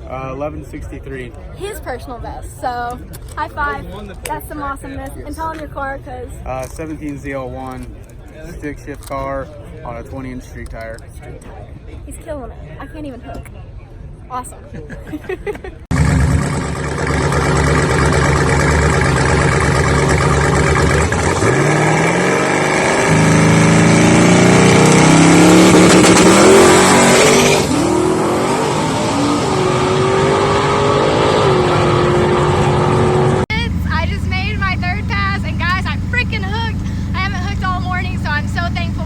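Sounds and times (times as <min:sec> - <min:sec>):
race car engine at full throttle: 0:15.9 - 0:39.0.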